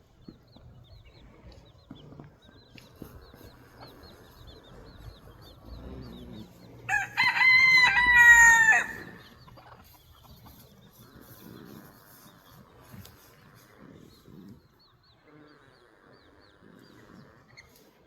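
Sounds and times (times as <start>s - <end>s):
rooster crowing: 6.9s - 9.2s.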